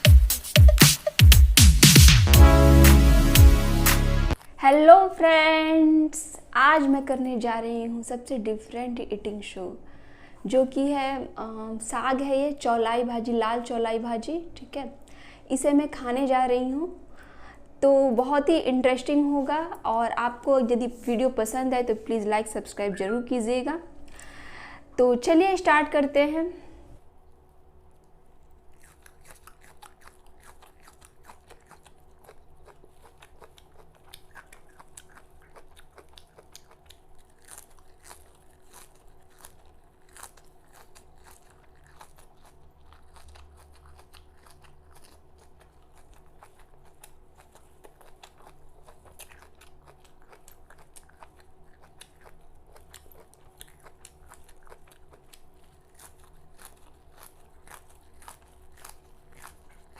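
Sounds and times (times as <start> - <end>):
faint steady hum: 4.3 - 59.9
person chewing crunchy leaves: 27.0 - 59.9.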